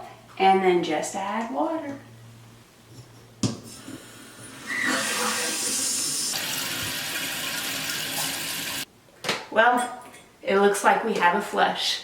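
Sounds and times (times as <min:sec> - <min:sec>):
water rushing through toilet: 0:03.8 - 0:08.8.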